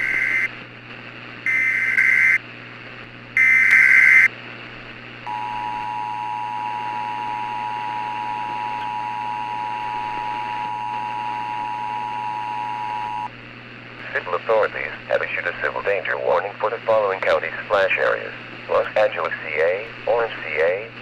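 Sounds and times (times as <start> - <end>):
buzzy digital data tones: 0.0 - 0.5, 1.5 - 2.4, 3.4 - 4.3
two-tone alert signal: 1.5 - 2.4, 3.4 - 4.3.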